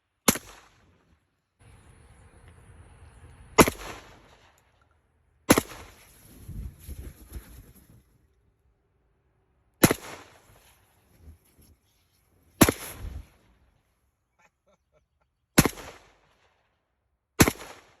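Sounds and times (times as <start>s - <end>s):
gunshots: 0.2s - 0.8s, 3.6s - 4.5s, 5.5s - 6.0s, 9.8s - 10.4s, 12.6s - 13.4s, 15.6s - 16.2s, 17.4s - 18.0s.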